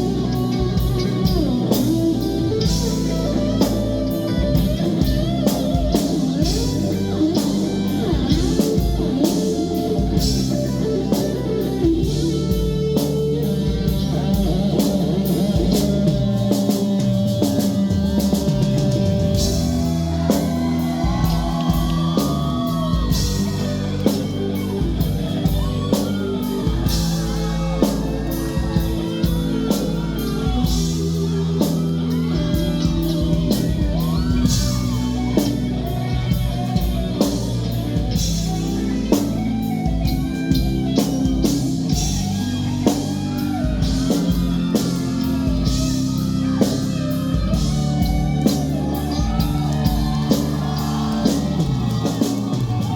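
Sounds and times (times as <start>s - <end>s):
bass guitar: 0.0s - 52.9s
drum kit beat: 0.0s - 52.9s
electric guitar: 0.0s - 52.9s.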